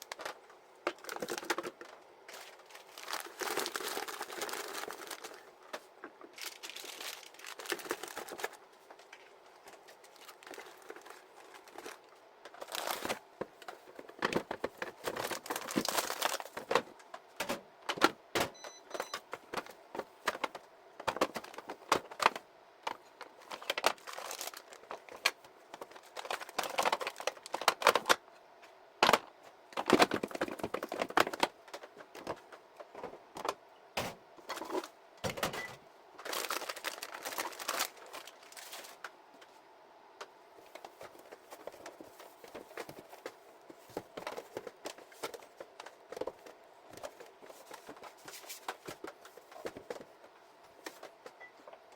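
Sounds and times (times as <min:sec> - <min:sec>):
plastic packaging crinkling: 0:00.0 - 0:16.8, 0:19.6 - 0:28.2, 0:29.0 - 0:32.4, 0:36.2 - 0:39.1.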